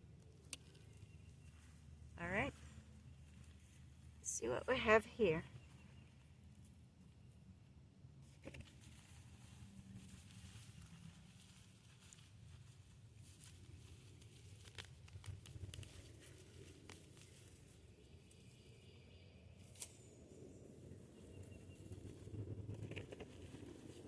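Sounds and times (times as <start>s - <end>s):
soil rustling and scraping: 8.2s - 18.6s.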